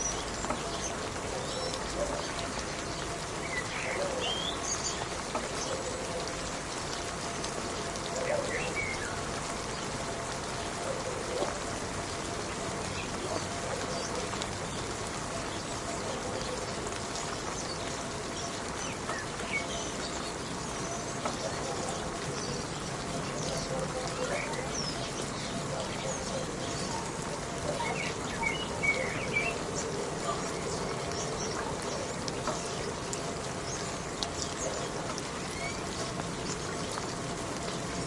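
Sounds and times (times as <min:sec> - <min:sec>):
steady rain falling: 0:00.0 - 0:38.0.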